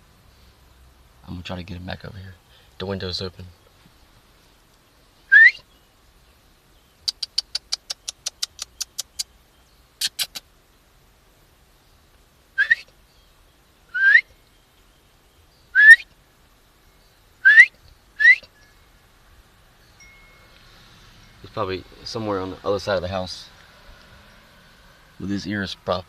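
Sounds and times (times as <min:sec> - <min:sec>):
short rising whistles: 0:05.3 - 0:05.7, 0:12.6 - 0:12.9, 0:13.9 - 0:14.3, 0:15.7 - 0:16.1, 0:17.4 - 0:18.7
tongue clicks calling a dog: 0:07.0 - 0:09.3, 0:10.0 - 0:10.5.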